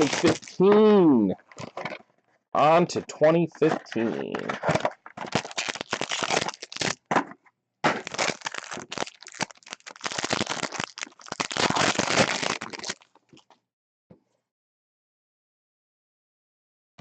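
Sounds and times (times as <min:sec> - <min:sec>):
plastic wrapping crinkling: 0:00.0 - 0:00.7, 0:01.4 - 0:02.0, 0:03.7 - 0:07.1, 0:07.9 - 0:13.5.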